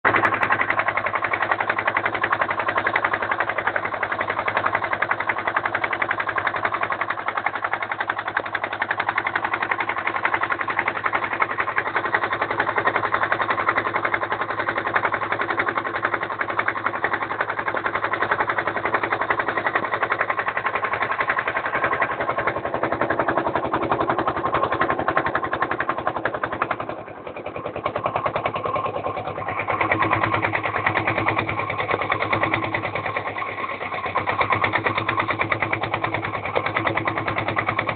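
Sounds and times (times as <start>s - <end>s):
motorboat engine chugging: 0.0s - 37.9s.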